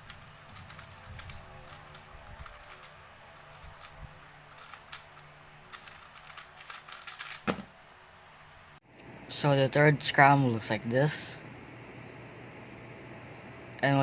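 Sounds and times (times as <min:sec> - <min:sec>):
puzzle cube plastic clicks: 0:00.0 - 0:07.7.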